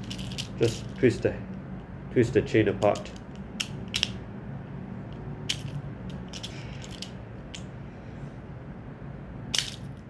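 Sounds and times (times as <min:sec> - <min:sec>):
handcuff chain clinking: 0:00.0 - 0:01.1, 0:05.1 - 0:07.7.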